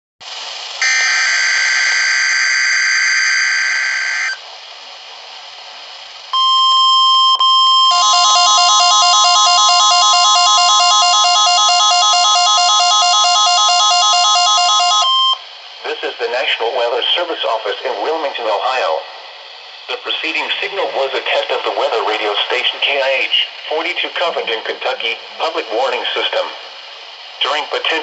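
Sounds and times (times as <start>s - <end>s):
fast two-note beeping alarm: 0.8s - 4.4s, 6.4s - 15.4s
screeching digital data burst: 0.8s - 4.4s, 7.9s - 15.4s
steady warning alarm tone: 0.8s - 4.4s, 6.4s - 15.4s
radio hiss: 15.0s - 28.0s.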